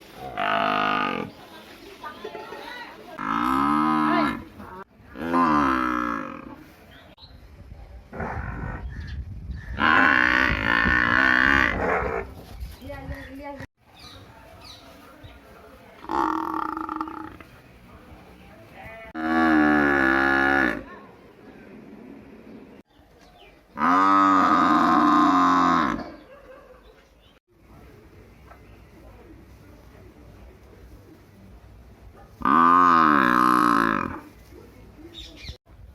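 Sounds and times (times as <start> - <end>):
buffalo mooing: 19.1 - 20.9, 32.4 - 34.3.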